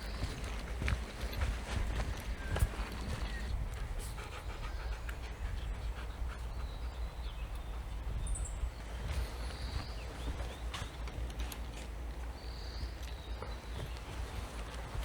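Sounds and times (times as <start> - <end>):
dog panting: 1.3 - 8.0.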